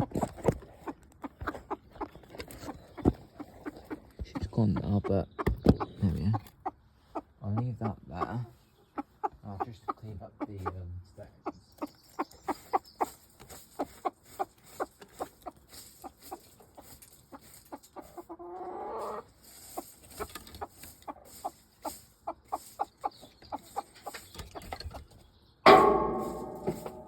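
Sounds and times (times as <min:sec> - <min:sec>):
chicken clucking: 0:00.0 - 0:27.0
sudden loud ringing sound: 0:25.7 - 0:27.0.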